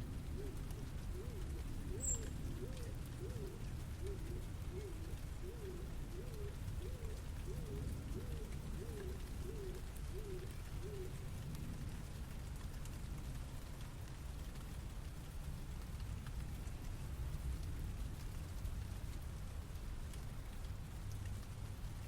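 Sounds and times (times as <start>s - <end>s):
low city rumble: 0.0s - 22.0s
bird cooing: 0.1s - 11.4s.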